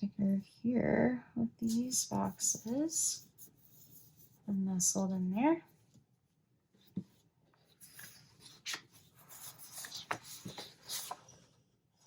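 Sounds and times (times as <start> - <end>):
paper sheets crackling: 8.4 - 11.2.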